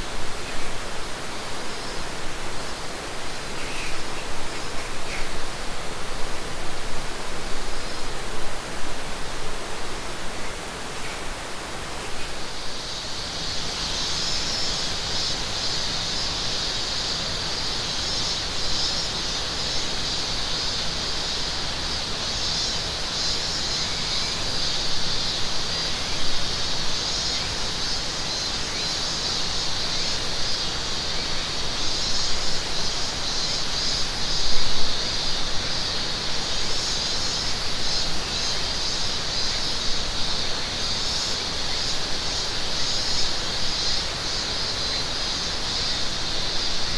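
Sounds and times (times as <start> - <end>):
pulsing cicada call: 0.0 - 9.1, 10.3 - 46.9
cicadas droning: 0.0 - 46.9.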